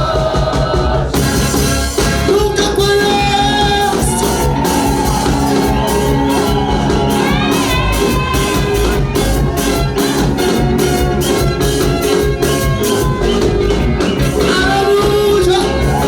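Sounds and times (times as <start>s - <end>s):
praise music beat: 0.0s - 16.0s
person singing: 12.8s - 16.0s.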